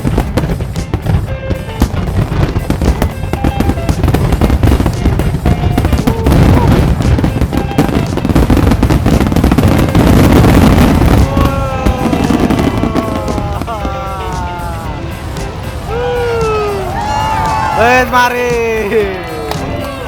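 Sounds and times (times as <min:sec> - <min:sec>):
fireworks bangs and crackles: 0:00.0 - 0:20.0.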